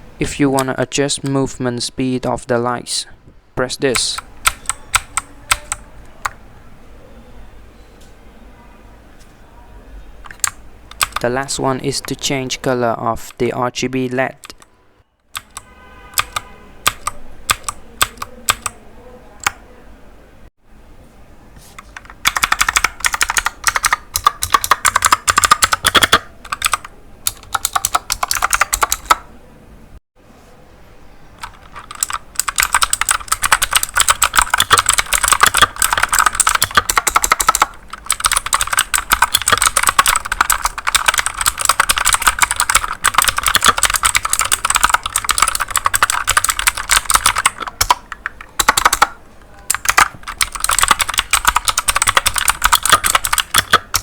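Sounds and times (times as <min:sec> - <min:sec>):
clicky mechanical keyboard typing: 0:00.2 - 0:01.4, 0:03.9 - 0:06.4, 0:10.2 - 0:12.4, 0:14.4 - 0:14.7, 0:15.4 - 0:18.8, 0:19.4 - 0:19.6, 0:21.8 - 0:29.3, 0:31.4 - 0:54.0.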